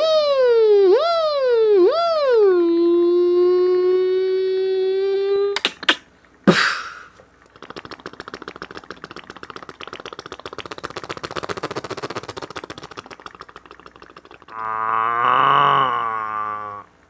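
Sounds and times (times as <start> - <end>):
beatboxing mouth clicks: 5.5 - 14.7
beatbox hit with falling sweep: 5.6 - 14.6.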